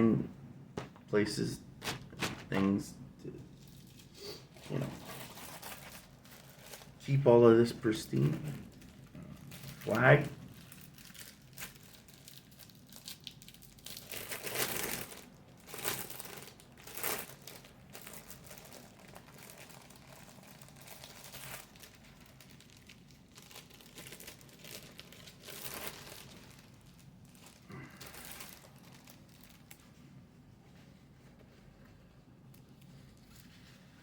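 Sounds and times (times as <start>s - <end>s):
packaging crinkling and rustling: 1.8s - 2.8s, 3.5s - 30.0s.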